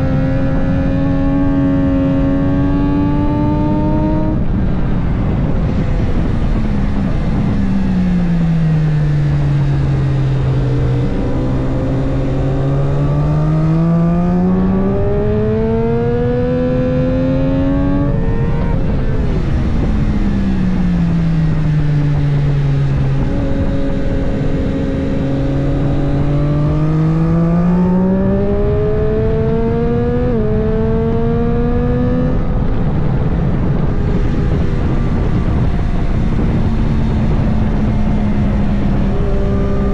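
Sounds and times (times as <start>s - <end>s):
motorcycle engine revving: 0.0s - 39.9s
wind and intake rush: 4.2s - 8.8s, 32.3s - 39.9s.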